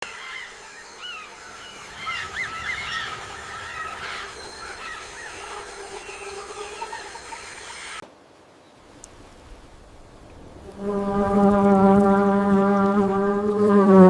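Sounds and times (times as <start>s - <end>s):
birds chirping and whistling: 0.2s - 8.0s.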